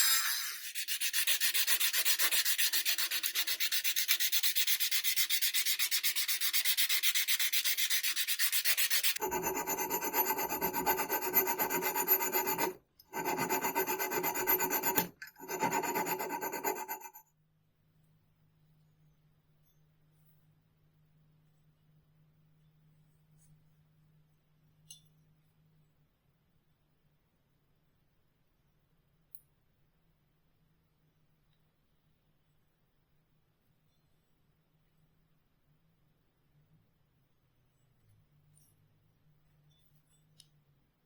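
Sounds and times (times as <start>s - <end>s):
rasping on an axe: 0.0s - 17.2s.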